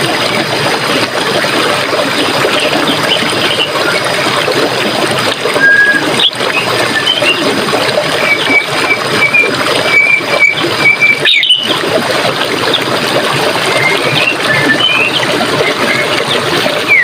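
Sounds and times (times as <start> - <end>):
stream water rushing: 0.0 - 17.0
small birds chirping: 11.2 - 11.7.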